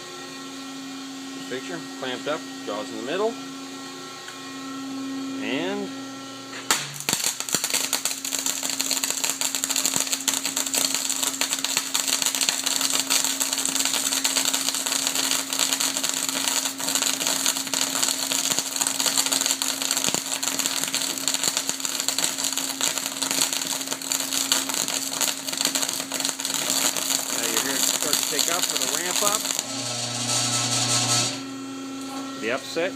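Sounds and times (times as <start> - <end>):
welding arc crackling: 6.7 - 31.5
electrical hum: 8.6 - 32.9.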